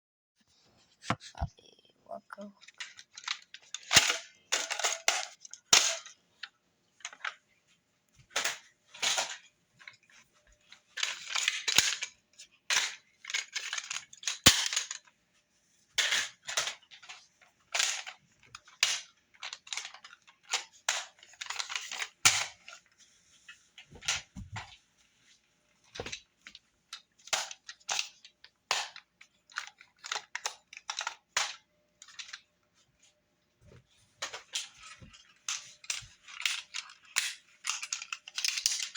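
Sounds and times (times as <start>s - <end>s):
plastic clicks and clacks: 2.6s - 7.4s, 8.3s - 15.1s, 16.0s - 22.9s, 25.8s - 32.5s, 34.2s - 38.9s
plastic rattling: 8.3s - 15.1s, 16.0s - 24.8s, 33.8s - 38.9s.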